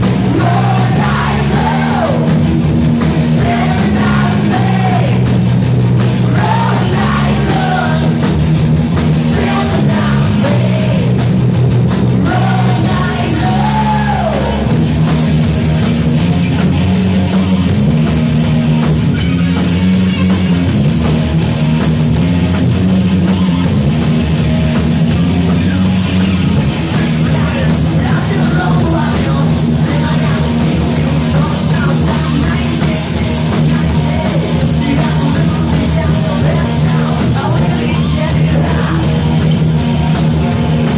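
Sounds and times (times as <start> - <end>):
rock band playing: 0.0 - 40.9
person singing: 0.2 - 2.4, 3.3 - 5.3, 6.3 - 8.3, 9.2 - 11.2, 12.2 - 14.6, 27.2 - 39.1.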